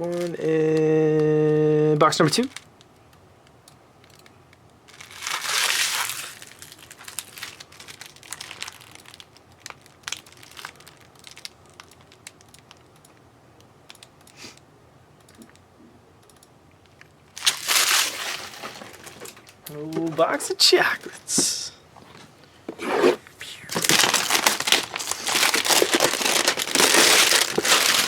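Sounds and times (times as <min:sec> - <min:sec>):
packaging crinkling as torn open: 0:04.9 - 0:12.9, 0:16.9 - 0:19.6, 0:23.7 - 0:28.0
cards rustling and clicking: 0:16.9 - 0:28.0.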